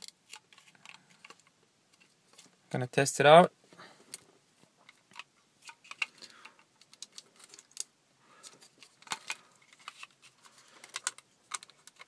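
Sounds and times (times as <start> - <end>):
light clicks of plastic parts: 0.0 - 2.8, 4.1 - 12.0.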